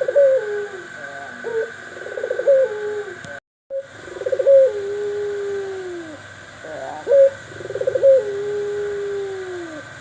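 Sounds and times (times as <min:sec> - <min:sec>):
bird trilling and cooing: 0:00.0 - 0:09.9.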